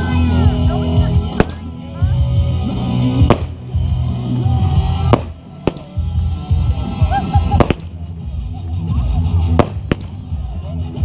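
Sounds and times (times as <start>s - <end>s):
music with heavy bass: 0.0s - 11.0s
fireworks banging: 1.3s - 1.8s, 3.2s - 3.8s, 4.9s - 6.2s, 7.4s - 8.0s, 9.5s - 10.3s.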